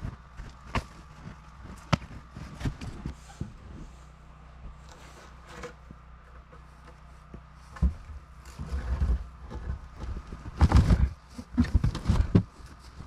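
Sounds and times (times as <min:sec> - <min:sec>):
heavy log thuds and scraping: 0:00.0 - 0:03.8, 0:07.7 - 0:12.6.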